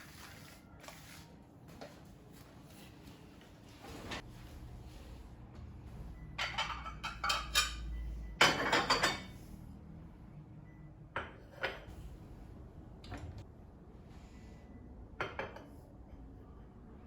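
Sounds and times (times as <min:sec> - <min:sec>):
dishes and cutlery clinking: 0:06.3 - 0:09.4.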